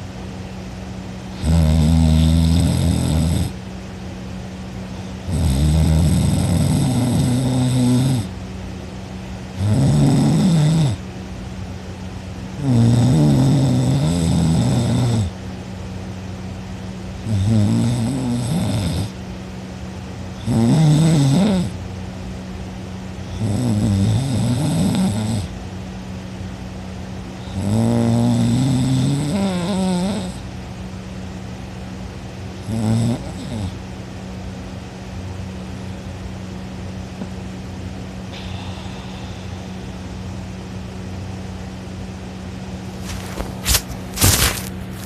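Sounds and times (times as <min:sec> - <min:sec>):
person snoring loudly: 0:01.3 - 0:03.6, 0:05.3 - 0:08.3, 0:09.6 - 0:11.0, 0:12.6 - 0:15.3, 0:17.2 - 0:19.2, 0:20.4 - 0:21.7, 0:23.3 - 0:25.5, 0:27.4 - 0:30.4, 0:32.6 - 0:33.8.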